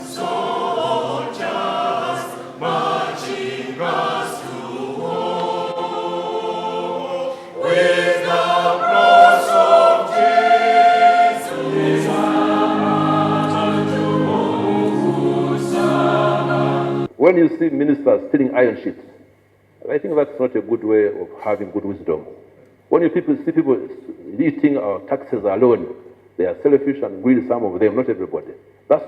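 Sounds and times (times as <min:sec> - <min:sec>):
choir singing: 0:00.0 - 0:17.1.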